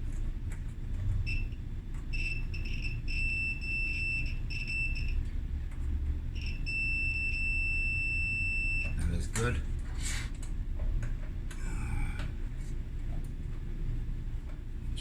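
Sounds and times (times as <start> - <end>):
multimeter continuity beep: 1.3 - 5.2, 6.3 - 9.0.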